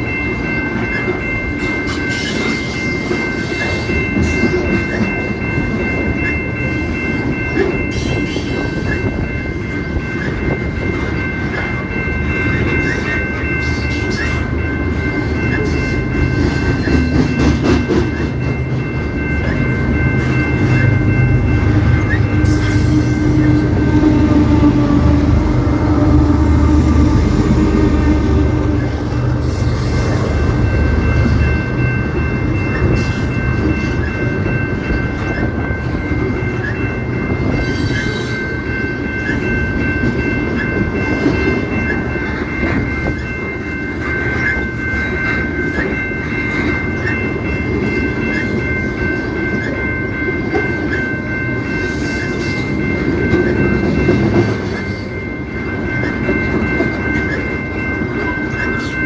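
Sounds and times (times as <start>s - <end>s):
train cars rumbling: 0.0s - 59.0s.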